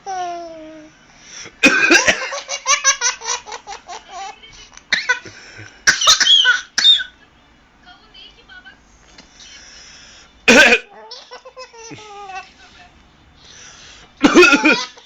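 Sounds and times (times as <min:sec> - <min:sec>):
man coughing: 0:01.6 - 0:02.3, 0:10.5 - 0:10.9, 0:14.2 - 0:14.9
child laughing: 0:10.9 - 0:12.4, 0:14.2 - 0:15.0.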